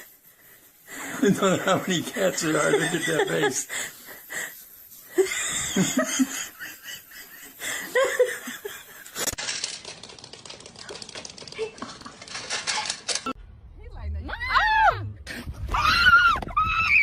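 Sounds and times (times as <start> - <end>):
person laughing: 1.0 - 4.5, 5.1 - 9.3
faint scattered clicking: 9.0 - 13.3.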